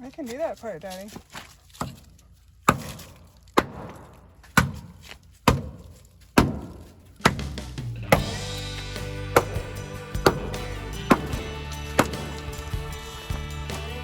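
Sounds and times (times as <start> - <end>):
sharp hammer blows: 8.1 - 12.7.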